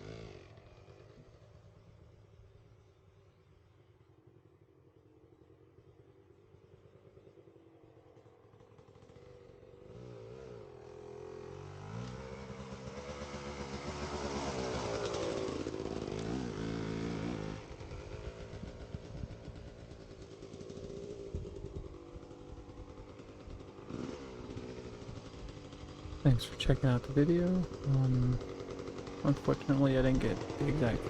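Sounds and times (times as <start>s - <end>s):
pit bike engine lugging: 24.8s - 31.0s.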